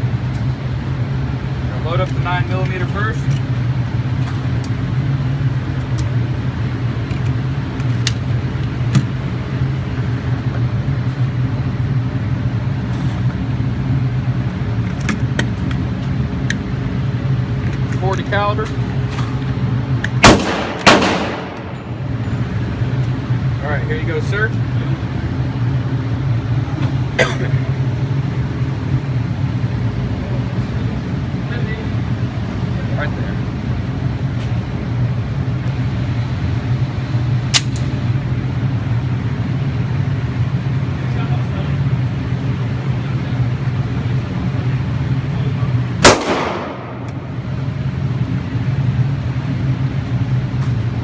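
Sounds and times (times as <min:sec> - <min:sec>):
steady low hum: 0:00.0 - 0:51.0
handgun shot: 0:20.2 - 0:21.8, 0:46.0 - 0:47.2.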